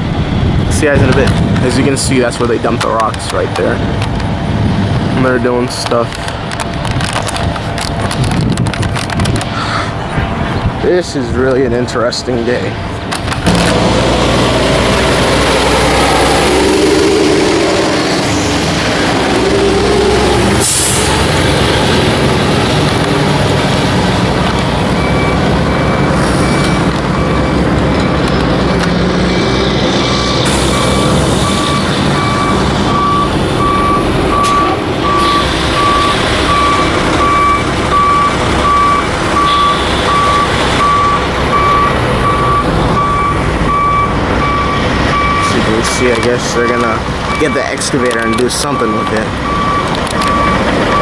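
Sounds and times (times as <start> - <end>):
heavy vehicle engine running: 0.0 - 51.0
reversing alarm beeping: 13.4 - 51.0.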